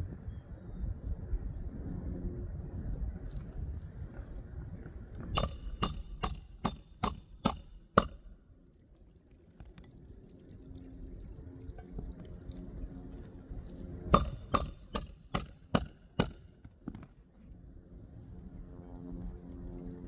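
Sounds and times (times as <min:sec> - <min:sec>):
hammer blows on a nail: 0:05.4 - 0:08.4, 0:14.2 - 0:16.7.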